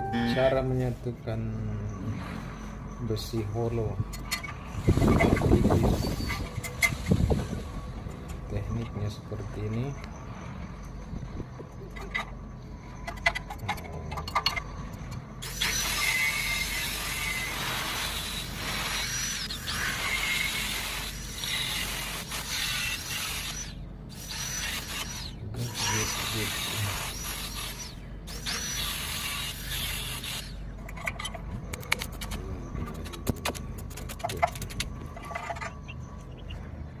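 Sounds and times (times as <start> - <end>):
arc welding crackling hiss: 15.4 - 30.6.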